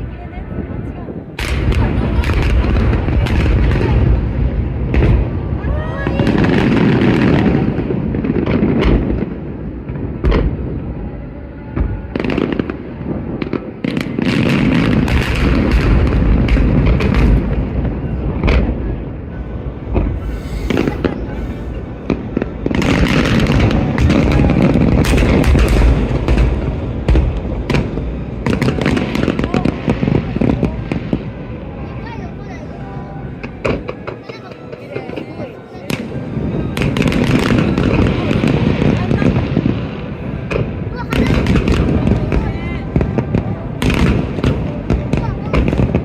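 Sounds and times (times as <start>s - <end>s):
fireworks shells bursting: 20.0s - 26.0s.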